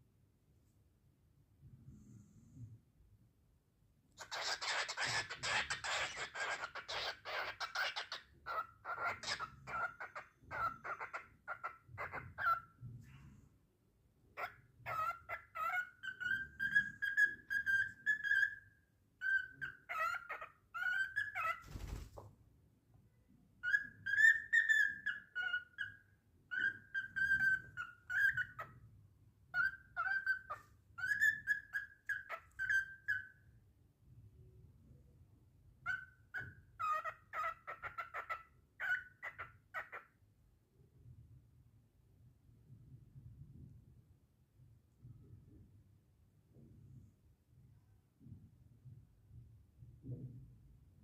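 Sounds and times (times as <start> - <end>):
cockatiel whistling and chirping: 4.2 - 12.7, 14.4 - 21.7, 23.6 - 28.8, 29.5 - 33.5, 35.8 - 40.1.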